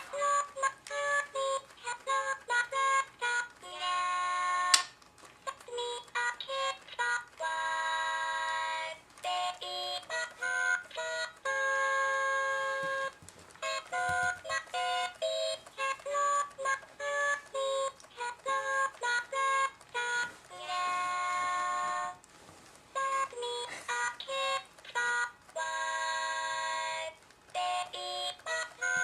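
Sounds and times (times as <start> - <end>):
electronic toy song: 0.0 - 4.8, 5.4 - 22.2, 23.0 - 29.0
sharp click: 4.7 - 5.1.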